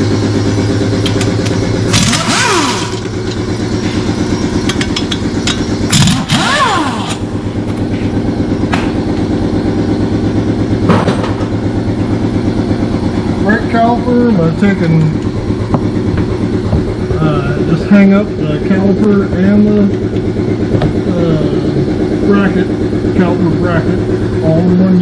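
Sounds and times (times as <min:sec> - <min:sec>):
air impact wrench spinning: 0:00.0 - 0:08.2
piston air compressor running: 0:00.0 - 0:25.0.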